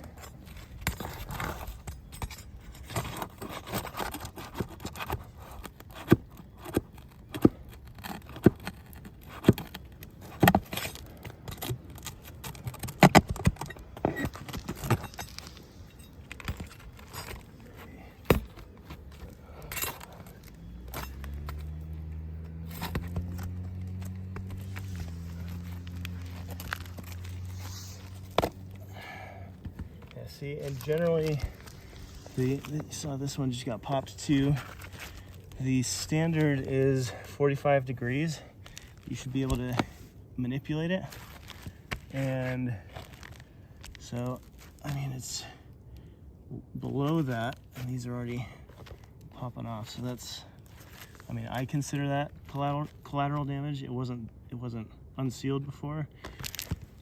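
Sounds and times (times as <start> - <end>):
steady low hum: 0.0 - 40.6.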